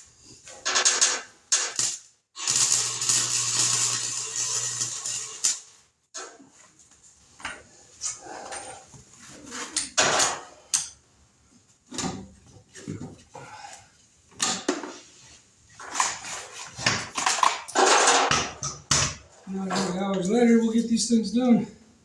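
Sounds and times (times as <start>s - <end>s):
welder crackling: 0.6s - 5.9s.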